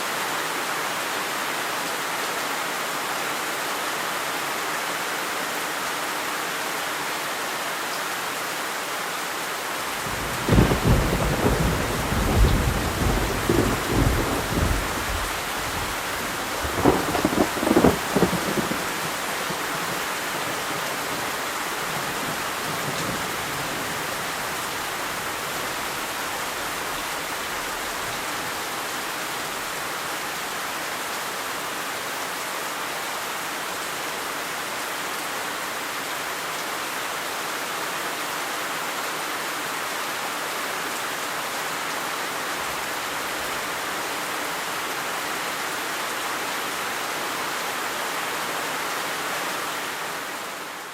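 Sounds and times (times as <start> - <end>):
heavy rain: 0.0 - 50.9
low rumble of thunder: 10.1 - 21.3.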